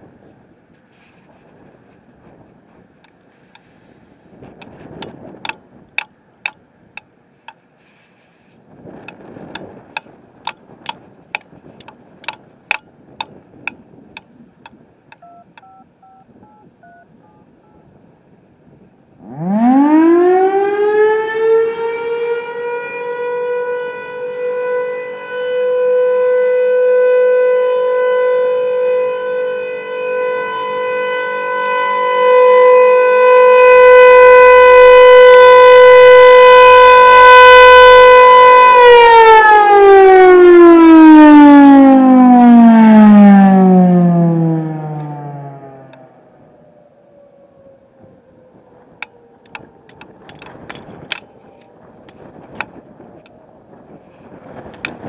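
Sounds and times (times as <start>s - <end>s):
outdoor warning siren: 3.0s - 6.6s, 15.1s - 18.0s, 19.2s - 55.0s.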